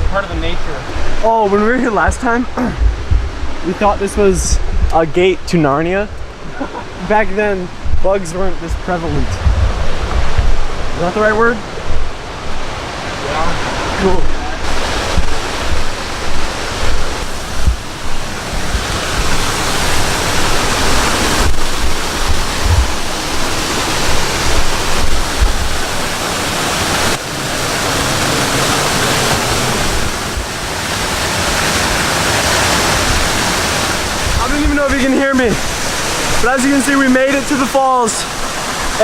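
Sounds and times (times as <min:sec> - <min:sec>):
waterfall rushing: 0:00.0 - 0:39.0
wind rumble on microphone: 0:02.0 - 0:27.2, 0:31.6 - 0:35.0.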